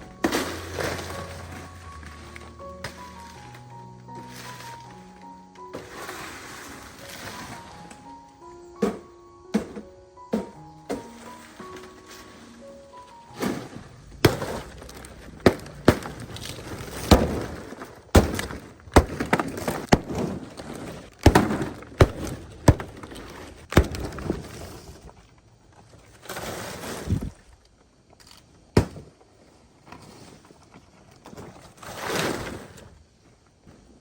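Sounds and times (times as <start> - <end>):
scraping rustle: 5.7 - 8.1, 11.0 - 18.6, 19.2 - 27.6, 29.5 - 33.2
sharp knocks and cracks: 13.4 - 24.8.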